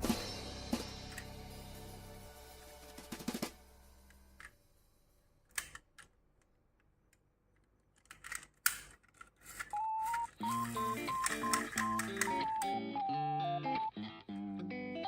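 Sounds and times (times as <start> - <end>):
background music with melody: 0.0 - 4.6, 9.8 - 15.0
beep-like tone: 9.8 - 13.9.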